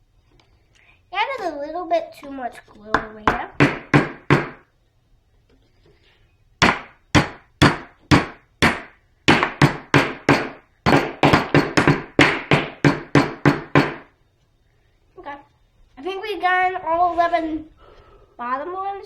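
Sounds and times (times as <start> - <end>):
hammer tapping wood: 2.9 - 4.6, 6.6 - 14.1.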